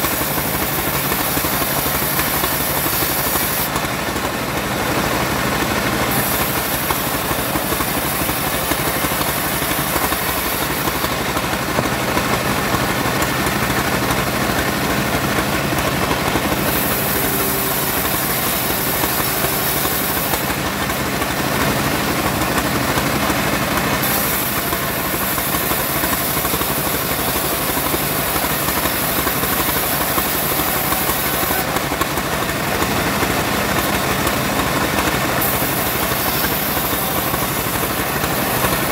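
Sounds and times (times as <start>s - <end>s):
high hiss of blade cutting wood: 0.0s - 3.8s, 6.1s - 11.1s, 16.4s - 20.9s, 24.0s - 32.0s, 35.4s - 38.9s
bandsaw running: 0.0s - 38.9s.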